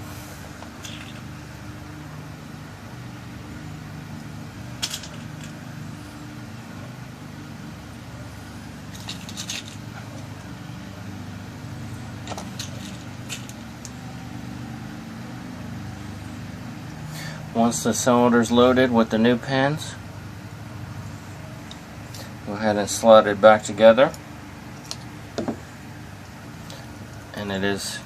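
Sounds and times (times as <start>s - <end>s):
steady low hum: 0.0s - 28.0s
lock pins dropping into cylinder: 4.8s - 5.6s, 8.9s - 9.8s.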